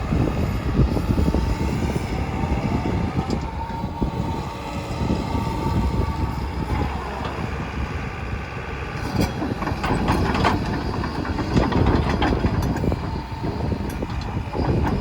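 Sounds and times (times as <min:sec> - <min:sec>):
excavator diesel engine rumbling: 0:00.0 - 0:15.0
metallic clanks and knocks: 0:09.2 - 0:13.2.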